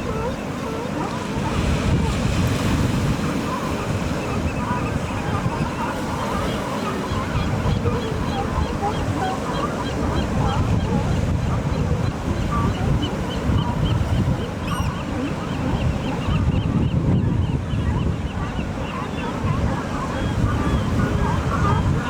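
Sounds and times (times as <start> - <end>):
ocean surf: 0.0 - 16.3
flock of birds calling: 0.0 - 22.0
wind on microphone: 0.0 - 22.0.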